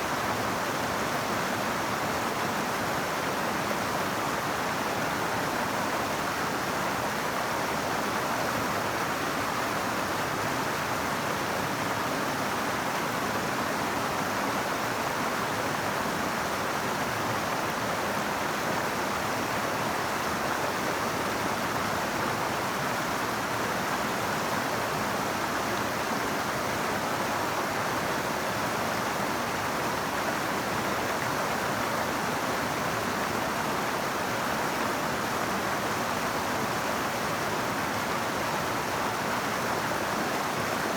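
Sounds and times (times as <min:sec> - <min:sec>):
river water flowing: 0:00.0 - 0:40.9.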